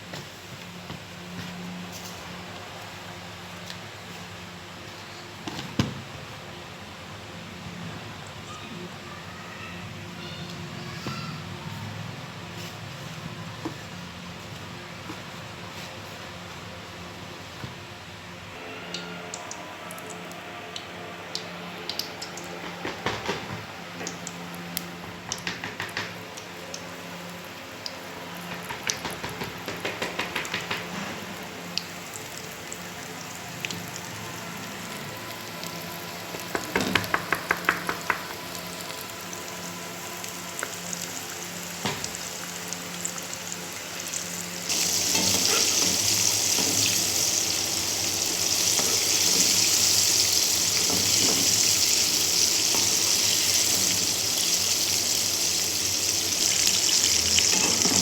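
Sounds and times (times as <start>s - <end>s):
loud steady sizzle: 11.6s - 58.0s.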